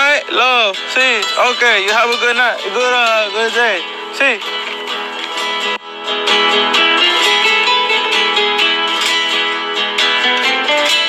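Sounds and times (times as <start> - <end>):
flamenco acoustic guitar: 0.0 - 11.0.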